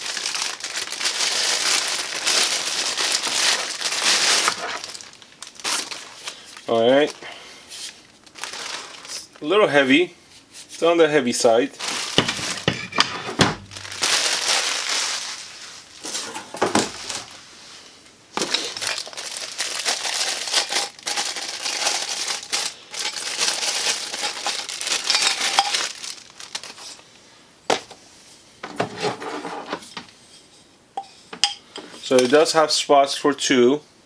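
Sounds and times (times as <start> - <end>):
plastic packaging crinkling: 0.0 - 9.8, 11.7 - 27.2
clinks and knocks of tool parts: 12.2 - 13.6.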